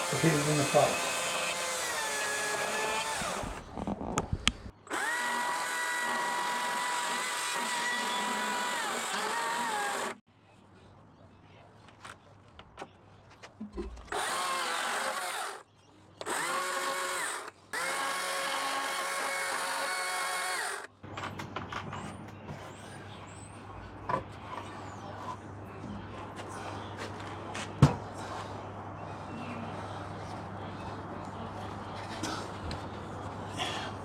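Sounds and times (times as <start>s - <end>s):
power tool motor whining: 0.0s - 3.6s, 4.9s - 10.2s, 14.1s - 15.6s, 16.2s - 20.9s.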